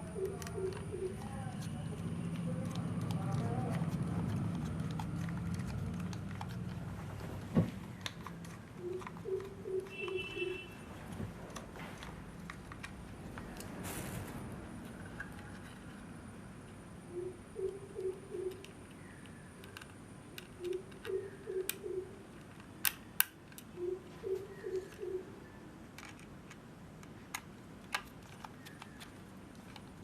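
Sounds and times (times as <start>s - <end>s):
dove cooing: 0.0s - 1.7s, 8.7s - 10.8s, 17.1s - 18.7s, 20.6s - 22.2s, 23.7s - 25.6s
sharp clicks: 0.0s - 6.8s, 17.6s - 25.2s.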